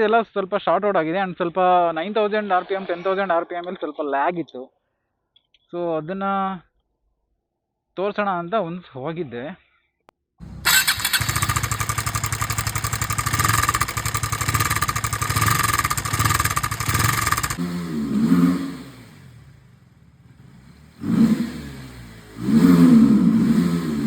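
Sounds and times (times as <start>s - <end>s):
motorcycle engine idling: 10.4s - 18.1s, 18.7s - 22.4s.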